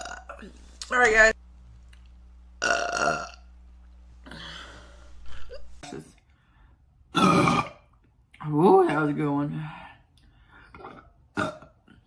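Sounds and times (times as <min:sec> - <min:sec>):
woman burping loudly: 0:00.0 - 0:00.5, 0:02.6 - 0:03.5, 0:07.1 - 0:07.9, 0:10.8 - 0:11.8.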